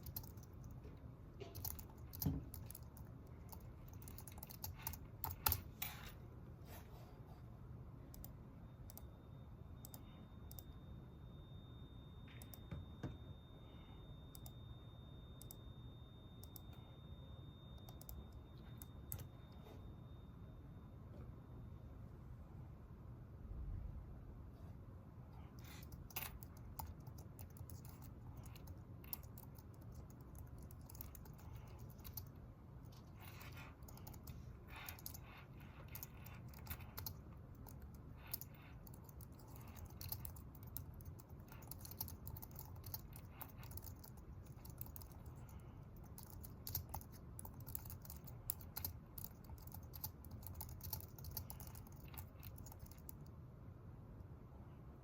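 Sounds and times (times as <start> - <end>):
low room hum: 0.0 - 55.0
computer keyboard key clicks: 1.5 - 5.7, 33.0 - 45.4, 46.0 - 53.2.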